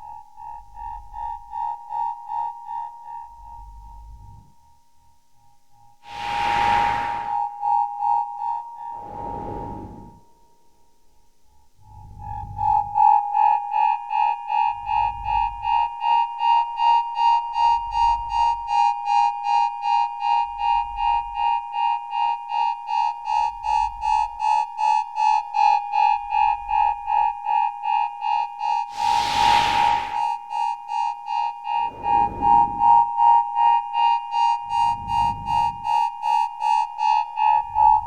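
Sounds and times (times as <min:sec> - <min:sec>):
hissing whoosh: 0:06.1 - 0:07.5, 0:09.0 - 0:10.2, 0:28.9 - 0:30.4, 0:31.8 - 0:32.9
deep low pulse: 0:31.8 - 0:33.0.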